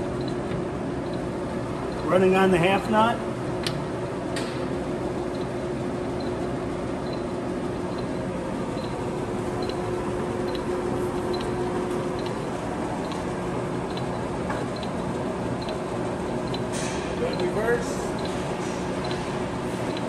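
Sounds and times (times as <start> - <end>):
lathe gear-train hum: 0.0 - 20.0
light regular ticking: 0.2 - 2.1, 5.3 - 7.3, 7.9 - 20.0.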